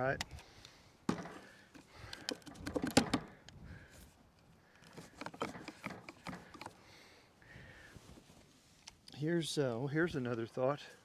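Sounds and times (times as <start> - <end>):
wooden parts knocking: 1.1 - 1.5, 2.2 - 3.3, 5.0 - 6.7.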